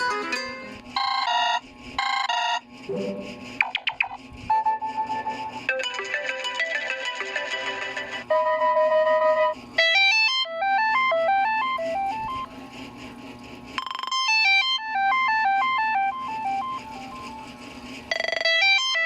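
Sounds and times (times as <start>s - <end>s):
electronic phone ringtone: 1.0s - 2.6s, 3.6s - 12.5s, 13.8s - 17.4s, 18.1s - 19.0s.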